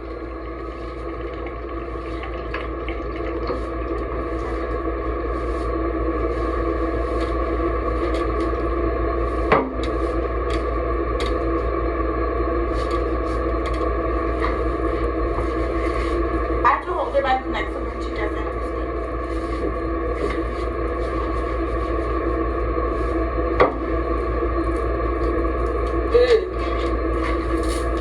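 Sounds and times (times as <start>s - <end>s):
water running from tap: 0.0s - 5.0s
ringing tone in pipes: 0.0s - 28.0s.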